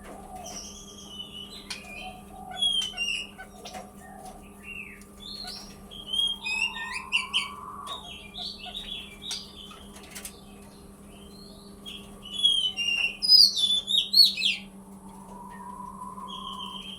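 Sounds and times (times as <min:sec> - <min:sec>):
faint steady hum: 0:00.0 - 0:16.9
quail chirping and whistling: 0:00.3 - 0:09.9, 0:11.2 - 0:16.9.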